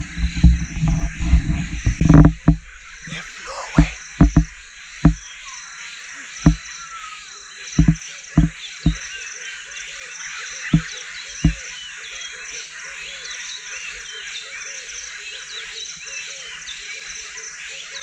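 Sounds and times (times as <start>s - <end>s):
warbling calls: 0.0s - 5.4s, 7.8s - 9.0s
frogs and insects chorus: 0.0s - 18.0s
footsteps on a field path: 7.8s - 9.0s.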